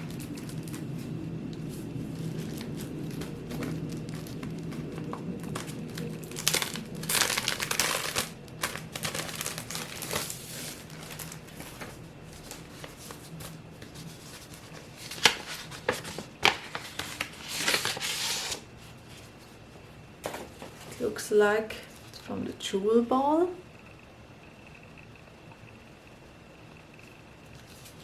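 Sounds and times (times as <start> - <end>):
paper envelope crinkling: 0.0 - 19.6.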